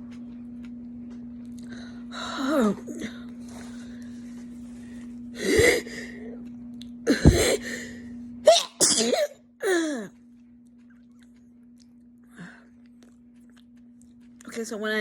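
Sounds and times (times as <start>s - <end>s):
woman sneezing: 8.5s - 10.1s.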